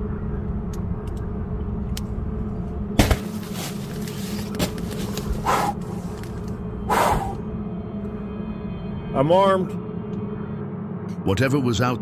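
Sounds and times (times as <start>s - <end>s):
steady low hum: 0.0s - 12.0s
thumps on a tent: 3.0s - 3.7s.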